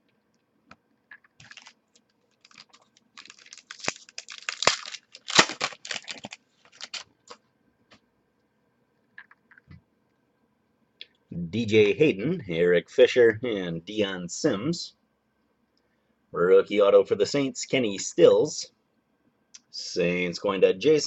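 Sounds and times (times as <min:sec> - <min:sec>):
trading cards clicking and rustling: 0:01.1 - 0:01.8, 0:02.4 - 0:07.4.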